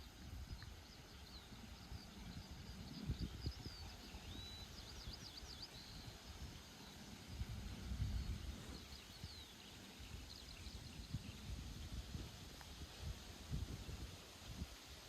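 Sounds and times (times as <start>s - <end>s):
small bird chirping: 0.0s - 7.4s
steady rain hiss: 0.0s - 15.0s.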